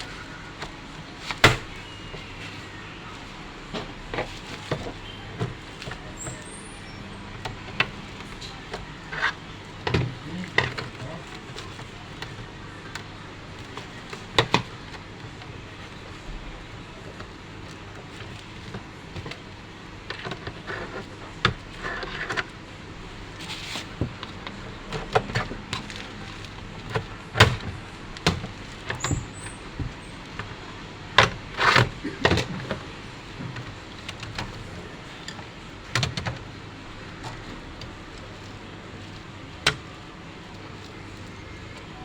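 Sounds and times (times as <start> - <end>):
computer parts clicking and knocking: 31.1 - 38.5.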